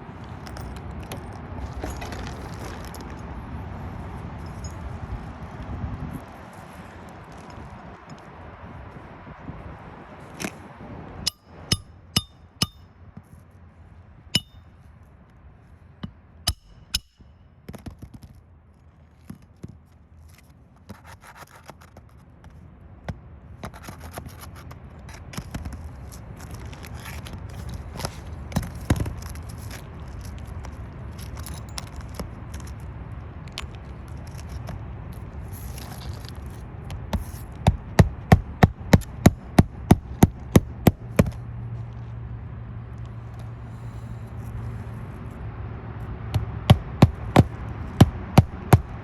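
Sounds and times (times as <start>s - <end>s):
scraping and rustling: 0.2s - 5.0s, 33.5s - 37.6s.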